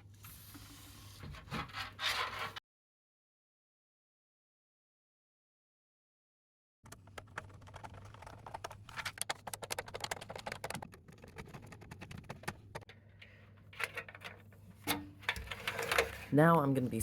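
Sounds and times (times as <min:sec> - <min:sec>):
cables and connectors clicking: 0:06.9 - 0:16.1.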